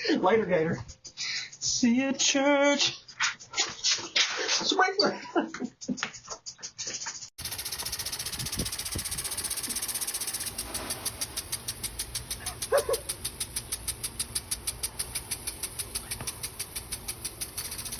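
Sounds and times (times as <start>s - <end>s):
lawn sprinkler hissing and ticking: 7.4s - 17.9s.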